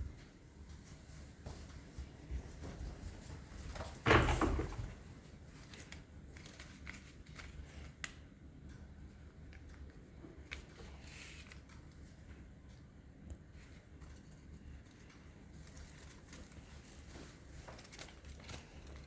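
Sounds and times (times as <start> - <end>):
paper folding rustle: 4.9 - 8.2, 10.4 - 12.0, 13.6 - 19.0
small paper ticks: 5.6 - 19.0.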